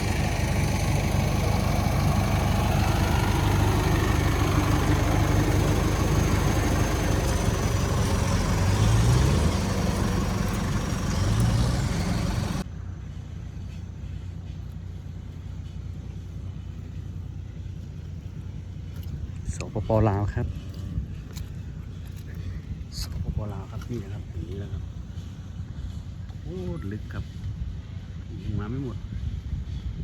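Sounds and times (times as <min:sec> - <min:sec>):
engine revving: 0:00.0 - 0:12.6
vehicle engine running: 0:00.0 - 0:30.0.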